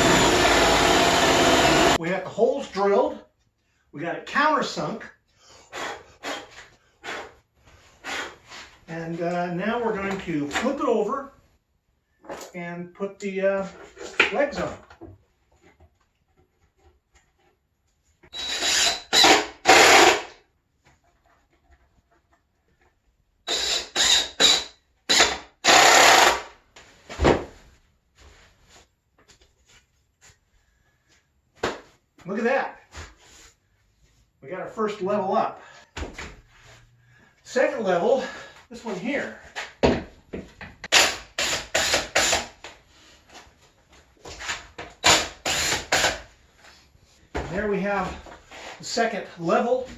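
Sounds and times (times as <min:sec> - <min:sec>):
power drill driving screws: 0:00.0 - 0:02.0, 0:18.3 - 0:20.4, 0:23.5 - 0:26.5, 0:40.9 - 0:42.6, 0:45.0 - 0:46.3.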